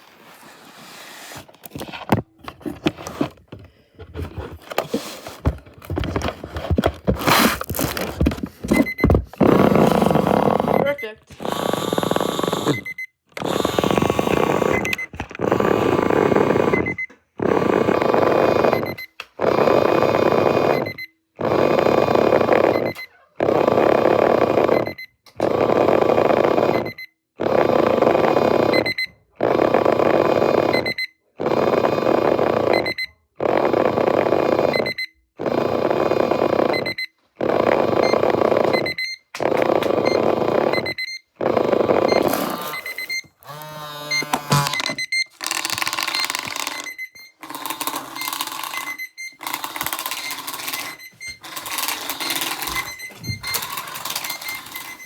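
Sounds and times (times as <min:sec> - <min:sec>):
alarm going off in bursts: 0:08.7 - 0:19.0, 0:40.0 - 0:55.0.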